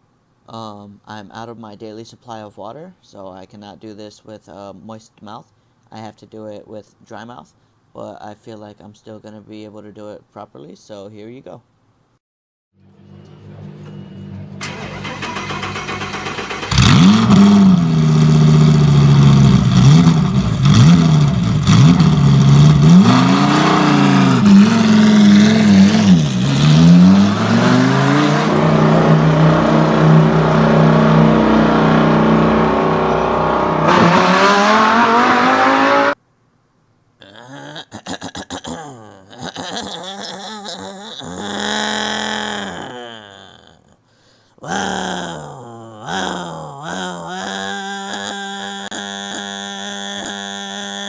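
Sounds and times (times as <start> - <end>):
sports car engine revving: 14.6 - 36.2.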